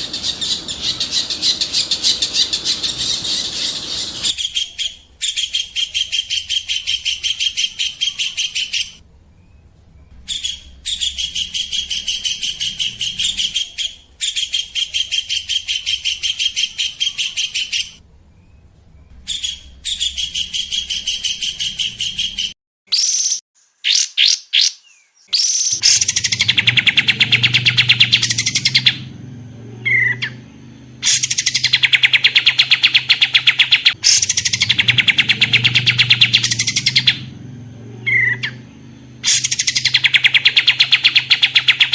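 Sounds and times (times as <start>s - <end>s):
songbird trilling: 0.0s - 9.0s, 10.3s - 18.0s, 19.3s - 41.9s
low background hum: 0.0s - 22.5s, 25.8s - 41.9s
high whistled bird notes: 10.3s - 18.0s, 19.3s - 41.9s.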